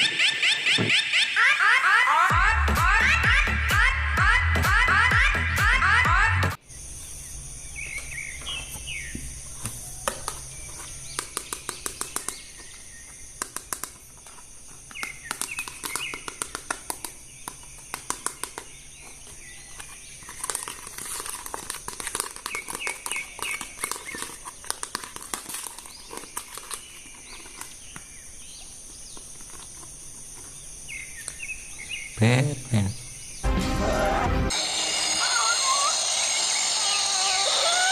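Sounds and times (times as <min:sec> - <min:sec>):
birds chirping: 0:00.0 - 0:21.3, 0:25.7 - 0:37.9
plastic packaging clicking and crinkling: 0:09.6 - 0:31.5.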